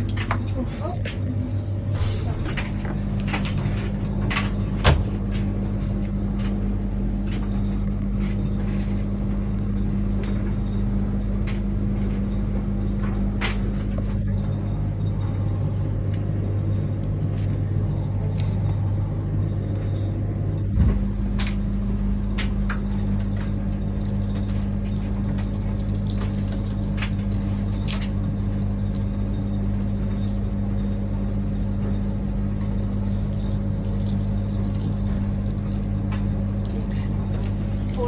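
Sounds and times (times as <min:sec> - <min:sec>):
washing machine humming: 0:00.0 - 0:38.0.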